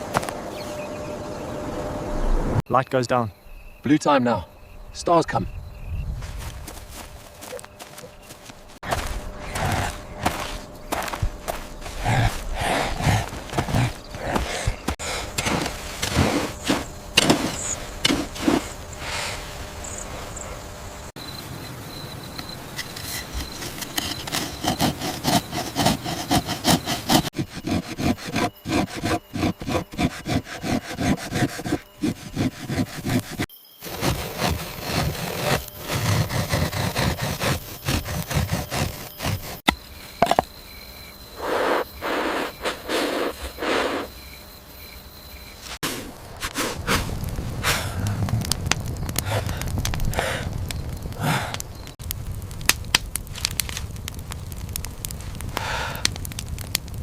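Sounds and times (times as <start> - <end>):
sawing strokes on wood: 8.8 - 19.4, 22.8 - 39.7.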